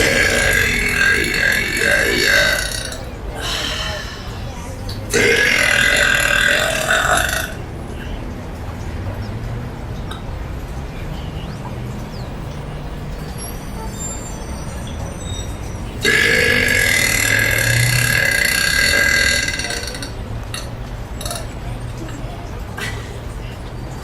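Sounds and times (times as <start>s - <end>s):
loud burp: 0.0s - 7.7s, 16.0s - 21.5s.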